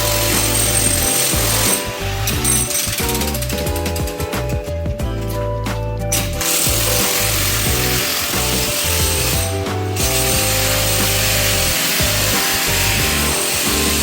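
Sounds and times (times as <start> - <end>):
background music: 0.0 - 14.0
power tool hissing on wood: 6.4 - 14.0.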